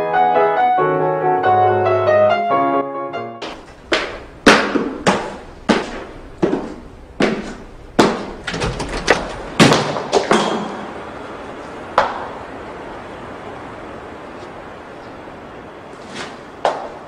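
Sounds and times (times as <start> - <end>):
sharp echoing knocks: 3.4 - 11.1.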